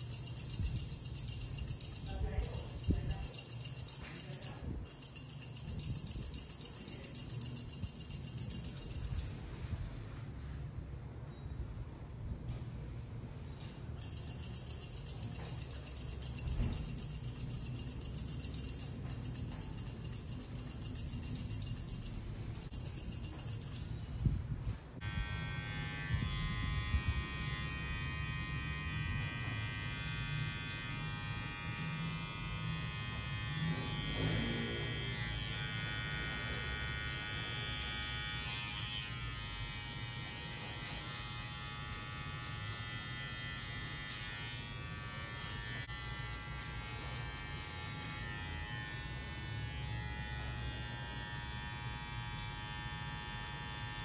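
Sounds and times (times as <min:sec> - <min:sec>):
electric hair clipper buzzing: 0:25.0 - 0:54.0.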